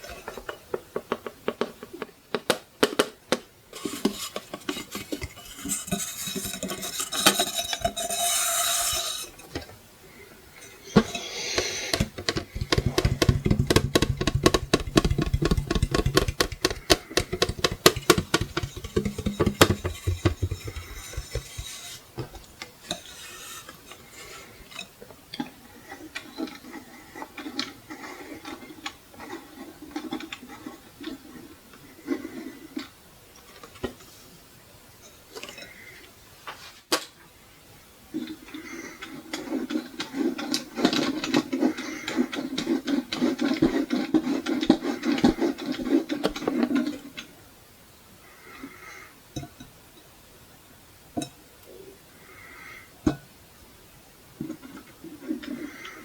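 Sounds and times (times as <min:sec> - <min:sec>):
scratchy rubbing: 0:03.7 - 0:09.6, 0:10.7 - 0:22.2, 0:22.9 - 0:24.4
sharp taps on clock: 0:11.9 - 0:21.7.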